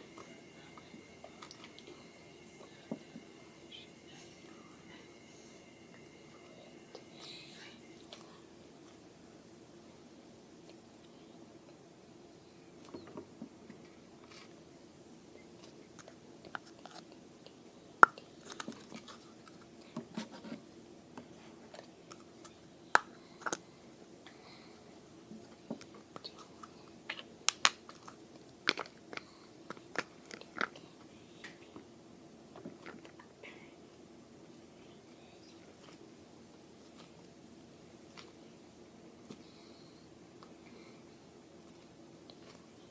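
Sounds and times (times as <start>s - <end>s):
slime crackling and popping: 27.4s - 29.0s.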